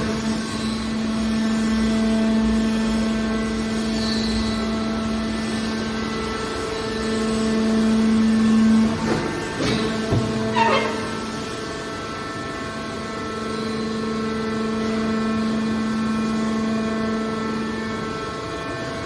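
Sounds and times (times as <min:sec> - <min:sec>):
baling machine droning: 0:00.0 - 0:19.0.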